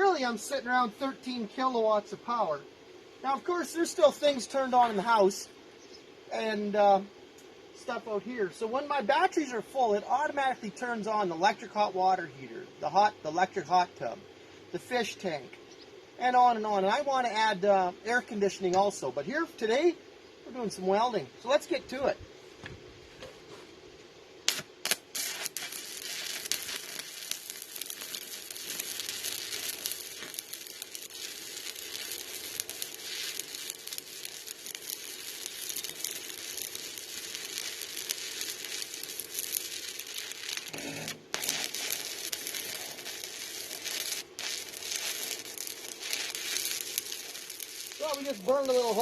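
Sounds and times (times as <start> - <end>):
welding arc crackling and sizzling: 0.0 - 2.6, 3.2 - 5.5, 24.4 - 49.0
welding arc striking ticks: 24.5 - 49.0.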